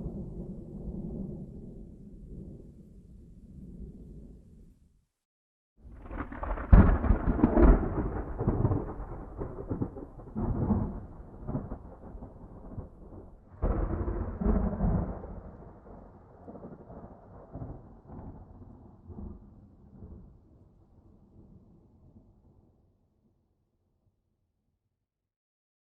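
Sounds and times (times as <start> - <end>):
thunder cracking and rumbling: 0.0 - 4.4, 5.8 - 20.6.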